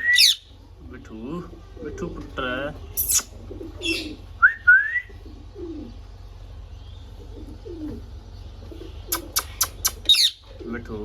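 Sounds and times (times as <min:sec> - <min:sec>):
rising whistles: 0:00.0 - 0:00.4, 0:04.4 - 0:05.2
parrot squawk: 0:00.0 - 0:00.5, 0:03.0 - 0:04.2, 0:09.1 - 0:10.4
parrot screech: 0:03.0 - 0:04.0.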